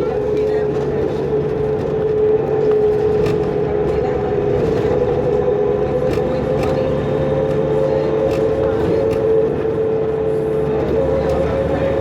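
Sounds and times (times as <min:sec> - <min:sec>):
bus diesel engine rumble: 0:00.0 - 0:12.0.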